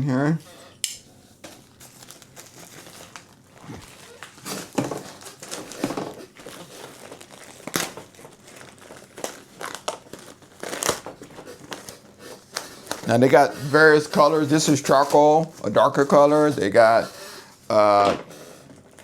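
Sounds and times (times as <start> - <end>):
mesh crinkling and rustling: 1.4 - 16.4.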